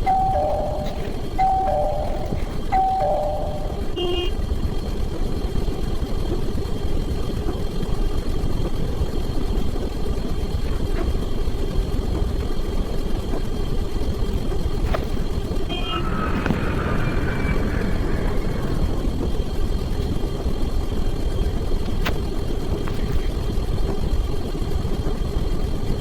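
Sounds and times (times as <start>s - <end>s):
short chime-like tone: 0.0s - 3.8s
steady low rumbling: 15.3s - 21.9s.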